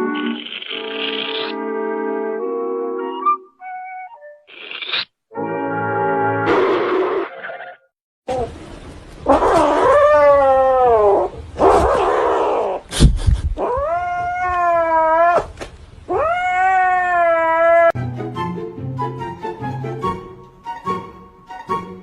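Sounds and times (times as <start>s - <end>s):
cat yowling: 9.3s - 12.8s, 13.6s - 15.5s, 16.1s - 18.0s.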